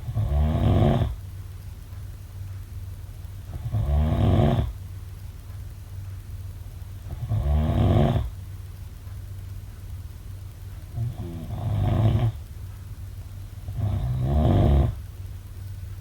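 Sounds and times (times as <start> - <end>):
person snoring: 0.0 - 1.2, 3.6 - 4.7, 7.1 - 8.3, 11.0 - 12.4, 13.6 - 15.0
steady low hum: 0.0 - 16.0.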